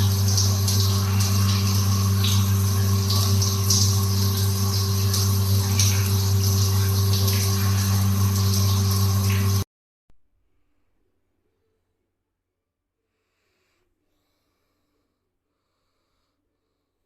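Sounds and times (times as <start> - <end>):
booster pump humming: 0.0 - 9.6
shower water spraying: 0.0 - 9.6.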